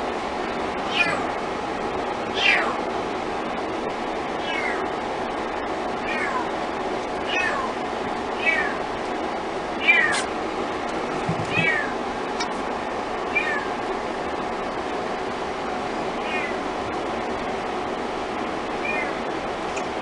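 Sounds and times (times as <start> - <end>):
kitten mewing: 0.9 - 1.3, 2.3 - 2.8, 4.4 - 4.8, 6.0 - 6.5, 7.2 - 7.8, 8.4 - 8.8, 9.8 - 10.3, 11.2 - 12.0, 13.3 - 13.8, 16.2 - 16.6, 18.8 - 19.2.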